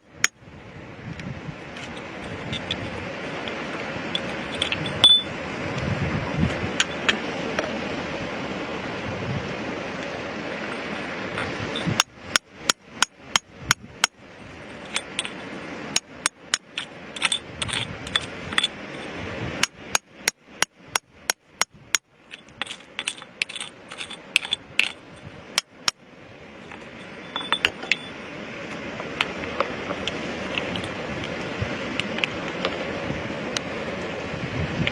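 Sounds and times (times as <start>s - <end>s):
hammer striking rock: 12.0s - 14.2s.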